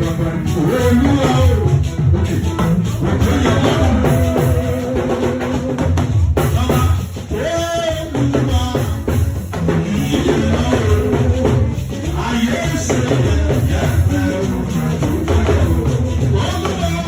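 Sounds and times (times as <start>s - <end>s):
choir singing: 0.0s - 6.0s, 9.7s - 17.0s
drum kit beat: 0.0s - 17.0s.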